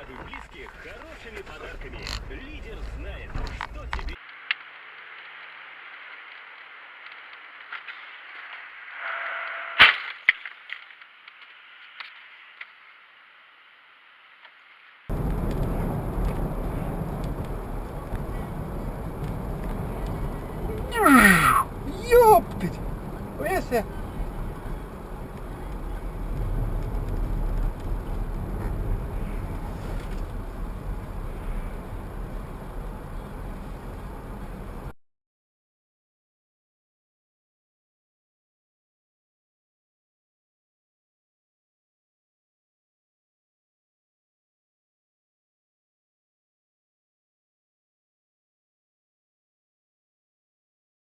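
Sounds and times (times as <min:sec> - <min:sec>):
road and engine noise: 0:00.0 - 0:04.2, 0:15.1 - 0:34.9.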